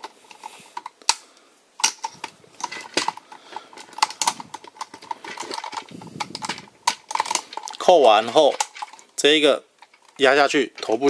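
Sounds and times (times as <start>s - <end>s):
plastic toy parts clicking: 0.0s - 1.2s, 1.8s - 9.1s.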